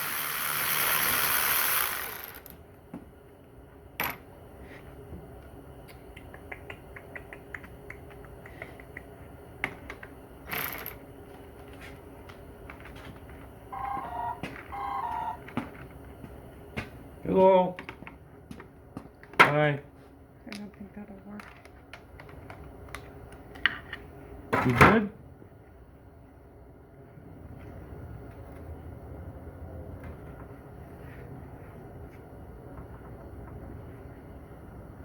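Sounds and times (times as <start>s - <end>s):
loud hissing: 0.0s - 2.4s
phone ringing two-note tone: 13.7s - 15.5s.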